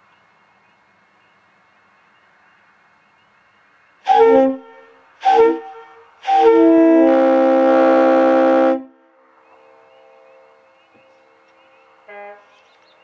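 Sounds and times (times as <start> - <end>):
air horn blasts: 4.1 - 9.0, 12.1 - 12.6.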